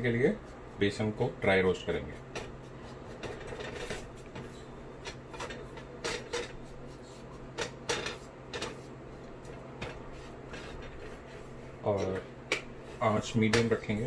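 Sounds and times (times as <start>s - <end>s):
steady low hum: 0.0s - 14.0s
spatula scraping flour in a pan: 9.9s - 11.9s.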